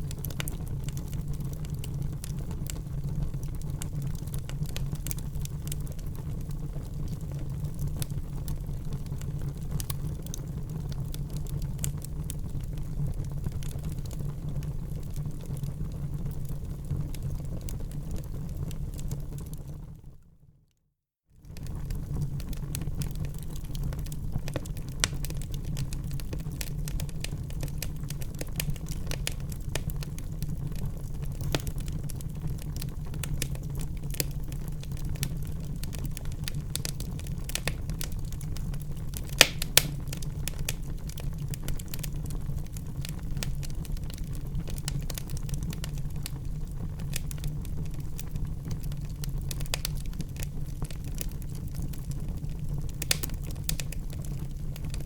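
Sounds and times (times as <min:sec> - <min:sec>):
wood fire crackling: 0:00.0 - 0:19.9, 0:21.4 - 0:55.0
sharp wood snaps: 0:39.3 - 0:40.0.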